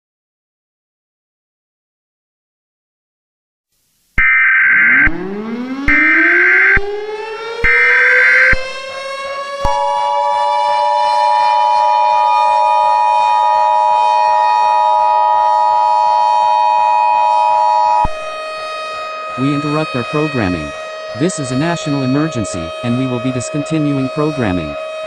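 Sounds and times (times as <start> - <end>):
civil defense siren winding up: 4.2 - 25.0.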